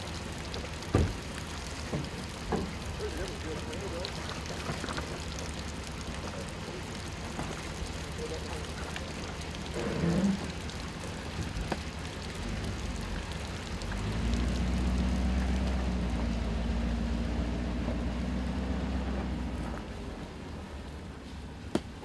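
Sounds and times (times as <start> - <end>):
truck engine rumbling: 0.0 - 22.0.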